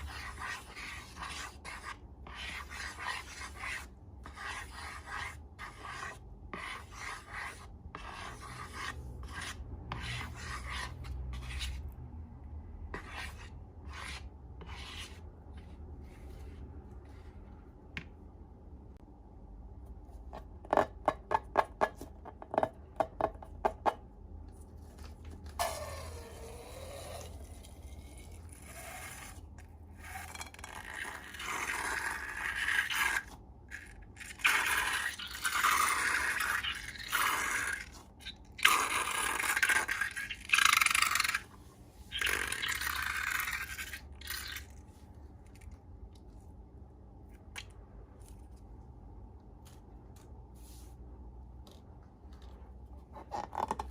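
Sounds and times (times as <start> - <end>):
slime squishing and scraping: 0.0 - 11.9, 13.0 - 17.4, 26.9 - 46.4.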